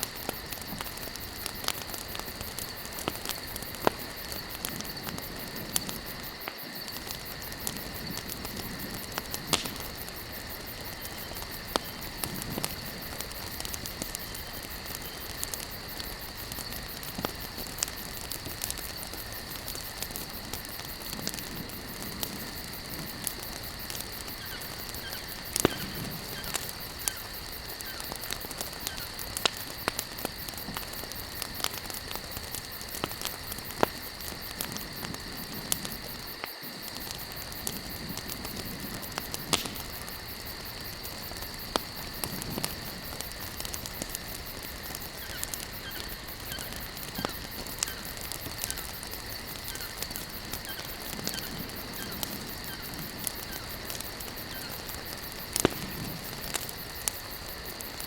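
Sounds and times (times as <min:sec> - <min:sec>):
fire hiss: 0:00.0 - 0:58.0
wood fire crackling: 0:00.0 - 0:58.0
sharp pops: 0:09.0 - 0:10.0, 0:22.2 - 0:27.2, 0:39.2 - 0:40.0, 0:55.6 - 0:56.6.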